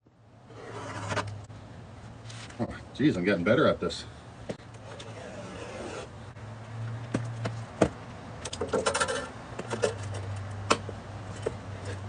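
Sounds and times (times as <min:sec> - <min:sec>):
sheet-metal strip scraping and crinkling: 0:00.5 - 0:01.4, 0:04.8 - 0:06.1.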